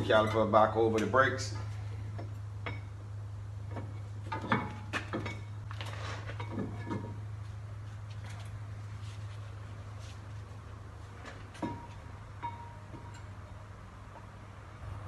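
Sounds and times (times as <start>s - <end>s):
steady low hum: 0.0s - 15.0s
light metal clinks and knocks: 11.2s - 13.6s.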